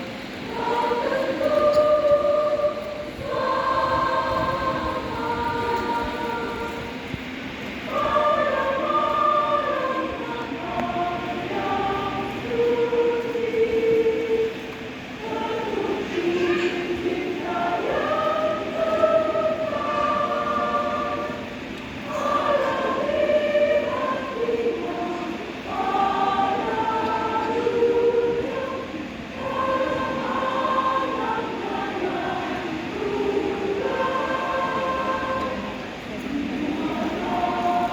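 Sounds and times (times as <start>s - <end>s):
choir singing: 0.0s - 37.9s.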